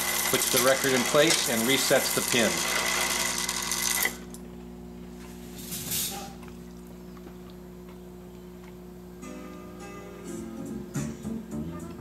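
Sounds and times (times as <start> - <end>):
jukebox changer mechanism: 0.0 - 4.3
low hum of jukebox: 0.0 - 12.0.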